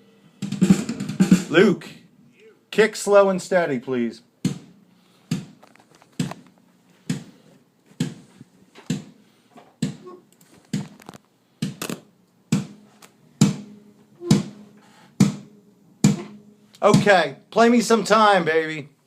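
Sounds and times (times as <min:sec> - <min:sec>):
kick drum hits: 0:12.5 - 0:12.8, 0:13.4 - 0:14.6, 0:15.2 - 0:17.2.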